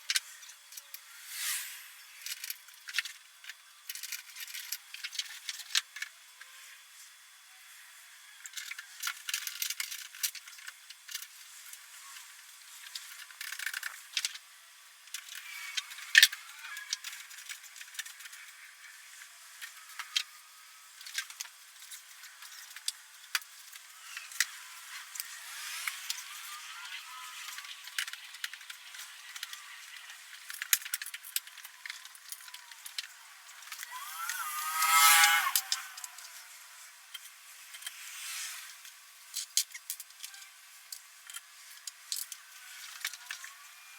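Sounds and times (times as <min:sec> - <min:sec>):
rising whine with rush: 0:33.8 - 0:36.8.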